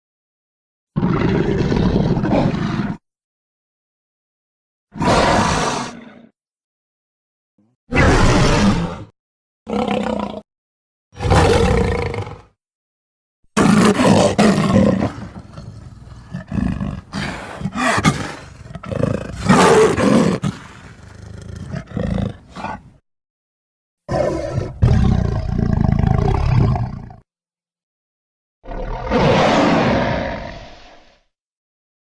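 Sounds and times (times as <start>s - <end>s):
dinosaur roars and growls: 1.0s - 3.0s, 5.0s - 6.4s, 7.9s - 9.1s, 11.2s - 12.6s, 13.6s - 22.9s, 24.1s - 27.2s, 28.6s - 31.3s.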